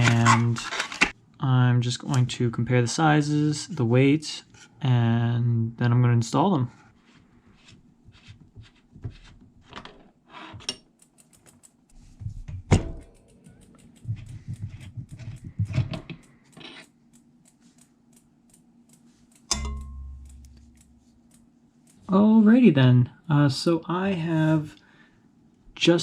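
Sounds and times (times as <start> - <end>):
low hum: 12.6 - 22.4
hex key clicking on metal: 13.0 - 14.5.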